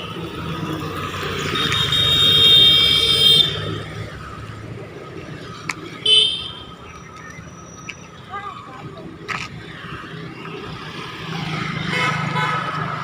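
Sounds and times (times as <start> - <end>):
passing engines rumble: 0.0 - 13.0
vehicle horn: 1.5 - 3.7, 6.1 - 6.7, 11.9 - 12.8.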